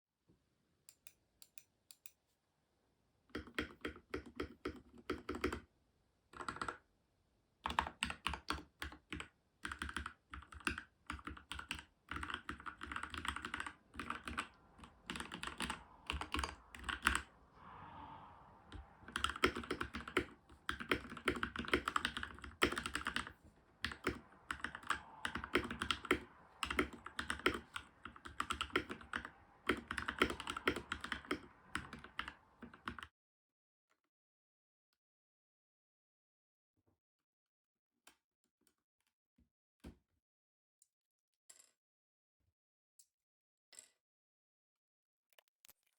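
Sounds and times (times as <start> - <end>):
mechanical keyboard typing: 3.4 - 5.6, 6.4 - 6.8, 7.6 - 17.3, 18.7 - 33.1.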